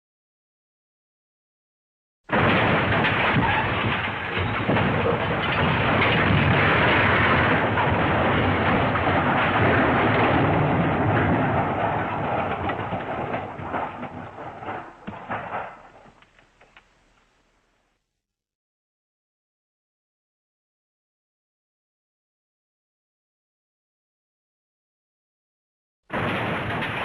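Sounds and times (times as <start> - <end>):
crashing and clattering: 2.3 - 17.4, 26.1 - 27.0.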